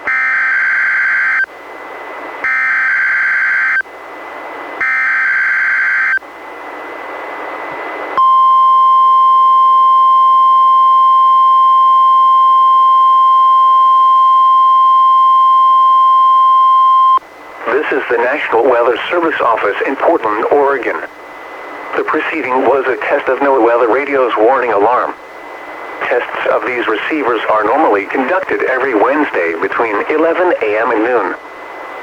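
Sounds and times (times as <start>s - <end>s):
steady warning alarm tone: 0.0s - 1.5s, 2.4s - 3.9s, 4.8s - 6.3s, 8.2s - 25.0s
radio hiss: 17.2s - 32.0s.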